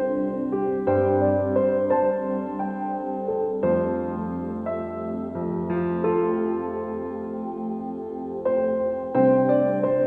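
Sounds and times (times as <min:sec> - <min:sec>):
instrumental keyboard music: 0:00.0 - 0:10.0.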